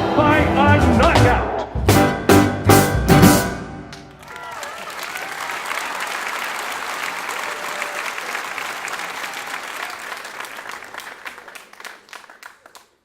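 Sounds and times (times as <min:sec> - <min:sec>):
crowd applauding: 0:03.9 - 0:13.0.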